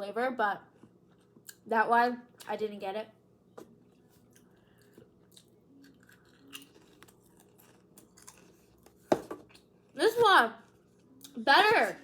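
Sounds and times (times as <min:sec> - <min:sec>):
chewing potato chips: 0:03.8 - 0:10.0.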